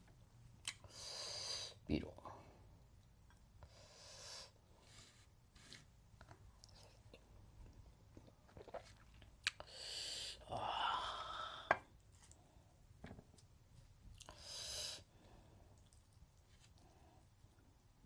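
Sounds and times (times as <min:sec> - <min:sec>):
loud hissing breath: 0:14.4 - 0:15.1.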